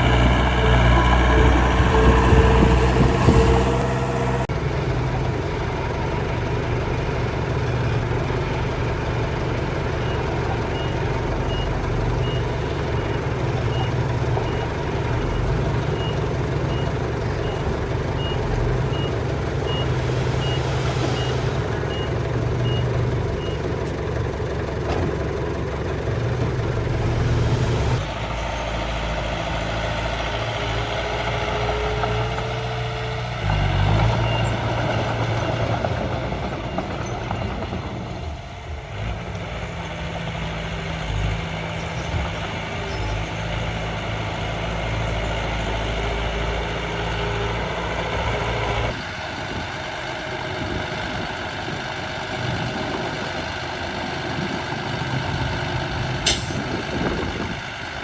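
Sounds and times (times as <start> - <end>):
reversing beeper: 15.3 - 23.7
low engine drone: 17.4 - 24.0.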